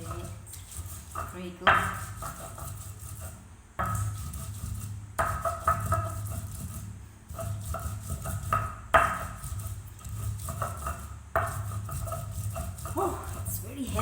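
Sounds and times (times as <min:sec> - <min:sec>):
stone pounding in mortar: 0:00.0 - 0:02.9, 0:03.8 - 0:14.0.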